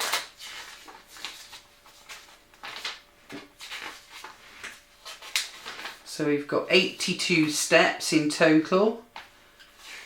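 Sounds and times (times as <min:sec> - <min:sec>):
paper pages rustling: 0:00.0 - 0:06.1.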